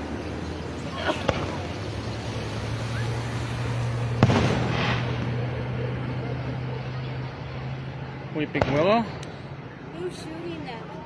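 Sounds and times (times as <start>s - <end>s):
fireworks going off: 0.0s - 6.8s, 8.4s - 9.3s
echoing rumble: 0.0s - 10.2s
loud firework bang: 1.2s - 1.8s, 3.2s - 5.6s.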